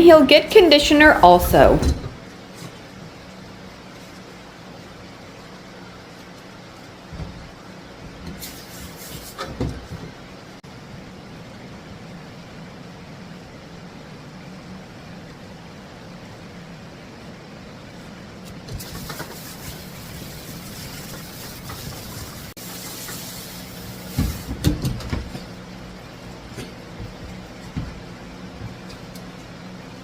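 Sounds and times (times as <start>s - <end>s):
water spraying from sprayer: 18.9s - 24.5s.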